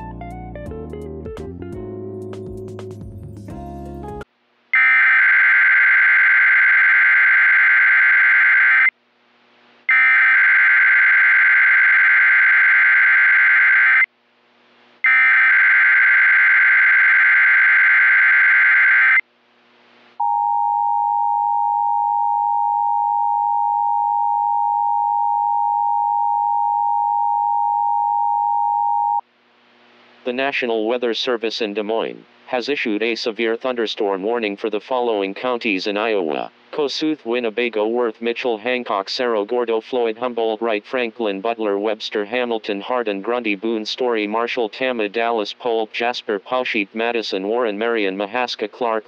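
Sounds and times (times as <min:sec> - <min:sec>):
two-tone attention signal: 0:20.2 - 0:29.2.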